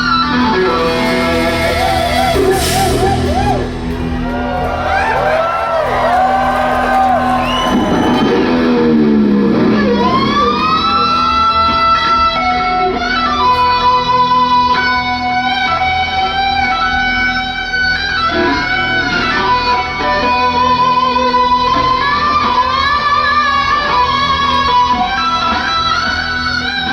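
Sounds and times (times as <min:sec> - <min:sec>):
steady low held note: 0:00.0 - 0:05.2
electric guitar playing: 0:00.0 - 0:26.9.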